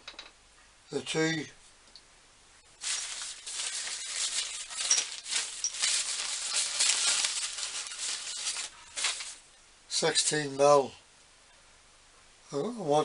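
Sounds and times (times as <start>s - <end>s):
small hardware rattling: 2.8s - 9.4s.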